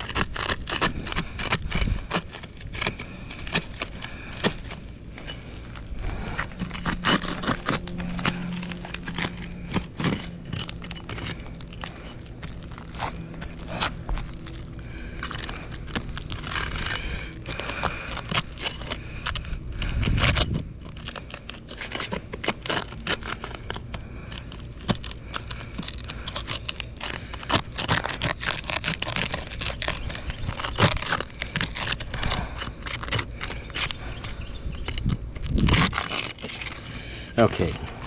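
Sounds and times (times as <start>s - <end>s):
shingle scraping and crackling: 0.0s - 38.0s
low rumble: 1.0s - 26.8s.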